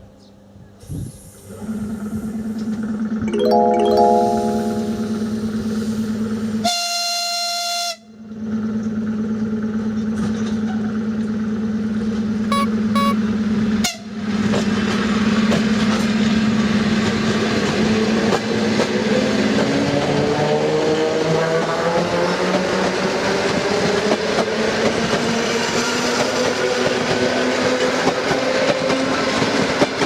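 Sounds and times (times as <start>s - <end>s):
short high train toots: 12.5s - 13.2s
train horn blast: 12.5s - 13.2s.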